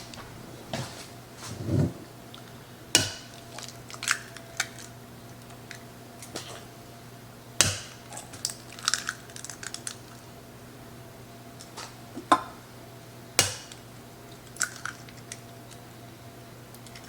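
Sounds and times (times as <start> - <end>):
eggs cracking on bowl: 7.6 - 10.2.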